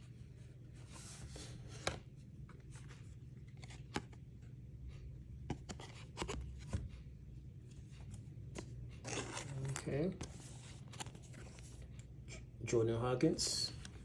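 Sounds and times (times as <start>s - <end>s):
steady low hum: 0.0s - 14.0s
cards sliding rustles: 0.8s - 4.2s, 5.4s - 7.0s, 7.7s - 12.5s.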